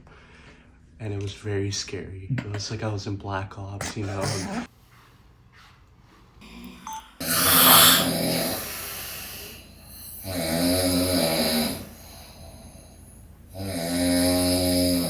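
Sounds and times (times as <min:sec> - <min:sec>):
man snoring loudly: 0:06.4 - 0:15.0.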